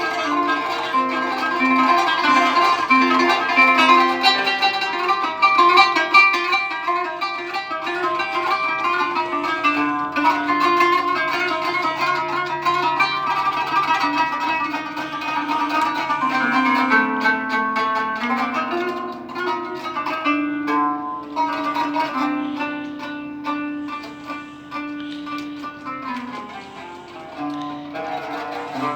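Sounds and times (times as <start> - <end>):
plucked string instrument melody: 0.0 - 28.9.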